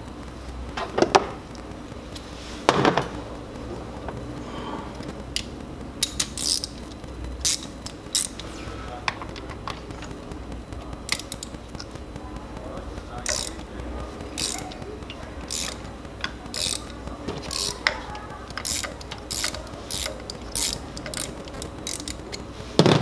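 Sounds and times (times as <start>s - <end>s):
metal tools clicking and clinking: 14.4s - 23.0s
loud knocks: 22.8s - 23.0s.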